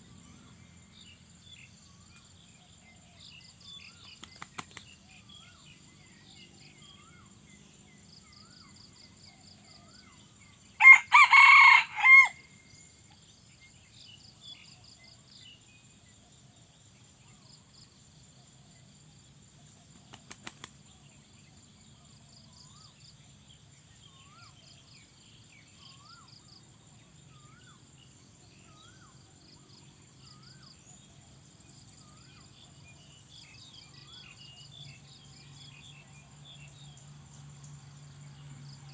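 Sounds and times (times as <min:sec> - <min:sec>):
rooster crowing: 0:10.8 - 0:12.5.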